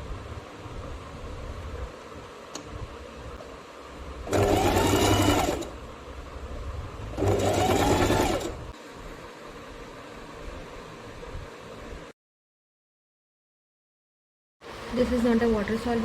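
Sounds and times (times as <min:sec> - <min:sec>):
sewing machine stitching: 0:04.2 - 0:05.8, 0:07.1 - 0:08.7.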